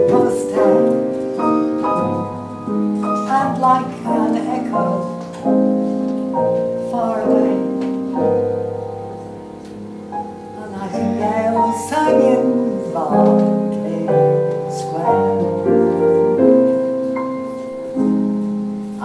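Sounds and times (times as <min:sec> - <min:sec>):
slow piano ballad: 0:00.0 - 0:19.0.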